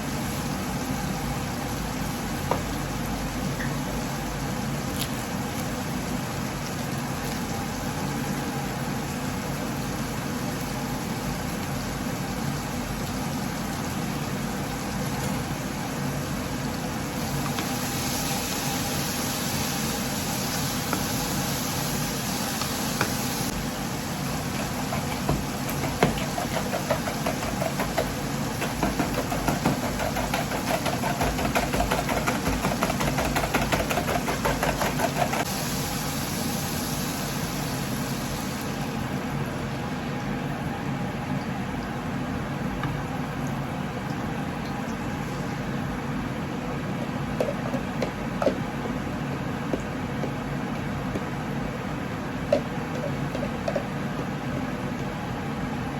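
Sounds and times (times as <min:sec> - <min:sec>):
stirring clatter in pan: 0:24.5 - 0:35.5.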